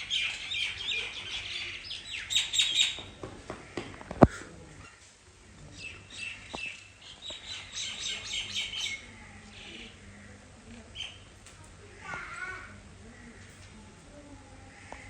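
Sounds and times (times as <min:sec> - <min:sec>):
small birds chirping: 0:00.0 - 0:03.2, 0:05.6 - 0:11.5.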